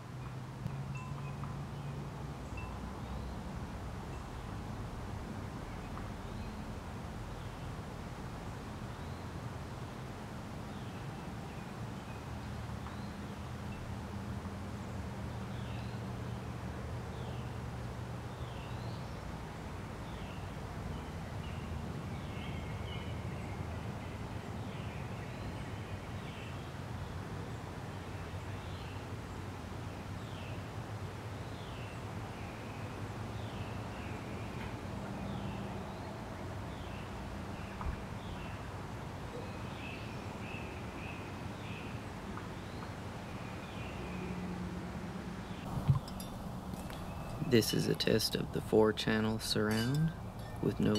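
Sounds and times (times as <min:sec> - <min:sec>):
birds chirping: 0:45.5 - 0:50.9.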